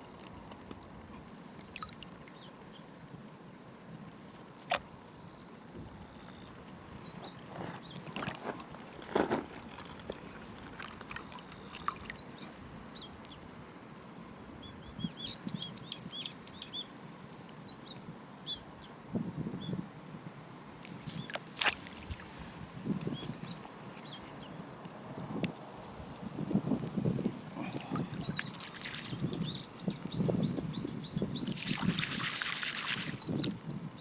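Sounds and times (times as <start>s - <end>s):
small birds chirping: 1.2s - 3.2s, 5.4s - 8.3s, 11.2s - 13.7s, 14.6s - 19.8s, 21.0s - 21.4s, 22.8s - 24.8s, 27.6s - 34.0s
sharp knocks or splashes: 20.9s - 22.2s.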